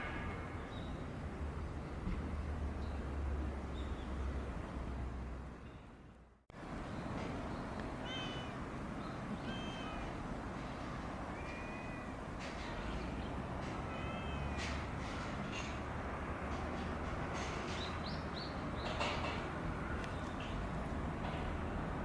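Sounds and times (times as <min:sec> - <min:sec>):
background noise: 0:00.0 - 0:22.0
cat meowing: 0:08.0 - 0:08.6, 0:13.9 - 0:14.6.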